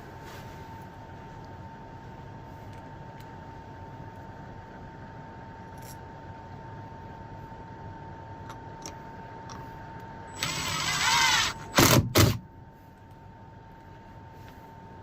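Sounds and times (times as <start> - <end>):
cordless drill driving a screw: 10.3 - 12.4.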